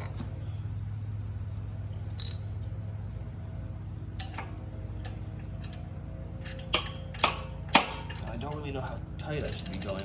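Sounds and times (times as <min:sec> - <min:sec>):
steady low hum: 0:00.0 - 0:10.0
wrench clicking on metal bolts: 0:02.1 - 0:02.4, 0:05.5 - 0:10.0.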